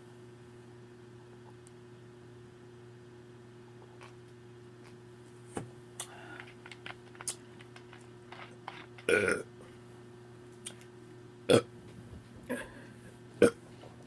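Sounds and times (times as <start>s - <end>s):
woman burping: 9.1s - 9.5s, 11.5s - 11.7s.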